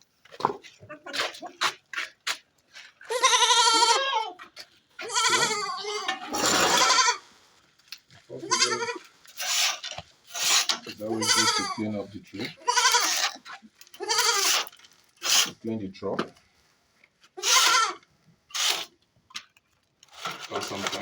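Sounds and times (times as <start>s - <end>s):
goats bleating: 3.0s - 4.4s, 5.0s - 7.3s, 8.4s - 9.1s, 10.9s - 13.4s, 14.0s - 14.7s, 17.4s - 18.0s.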